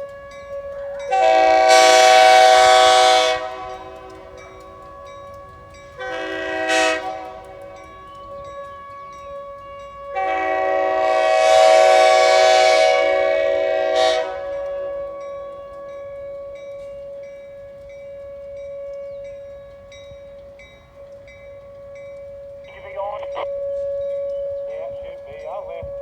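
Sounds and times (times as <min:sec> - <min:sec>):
locomotive air horn blast: 0:00.0 - 0:17.2
railroad crossing bell dinging: 0:00.0 - 0:26.0
tornado siren steady tone: 0:00.0 - 0:26.0.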